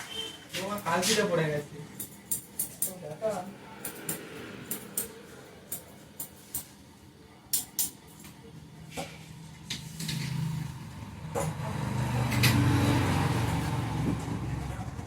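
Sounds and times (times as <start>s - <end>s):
vehicle engine approaching: 3.2s - 7.2s, 10.0s - 15.0s.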